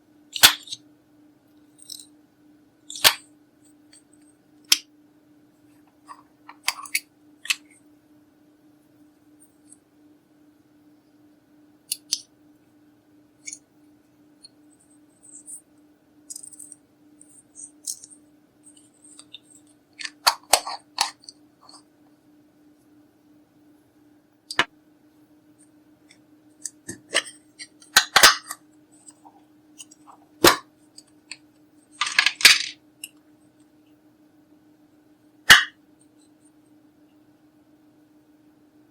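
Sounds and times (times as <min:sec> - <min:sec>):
faint low hum: 0:00.0 - 0:38.9
small hard objects clicking: 0:16.3 - 0:18.2.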